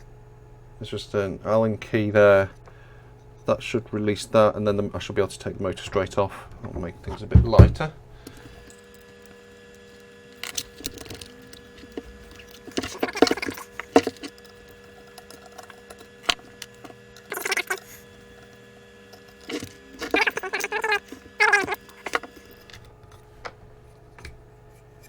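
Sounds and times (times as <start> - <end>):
metallic clicks and rattles: 8.2 - 22.9.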